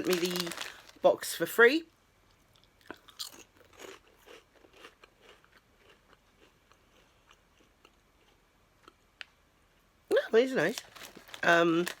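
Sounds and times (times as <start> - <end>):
person chewing crunchy crackers: 0.0 - 1.0, 2.5 - 9.2.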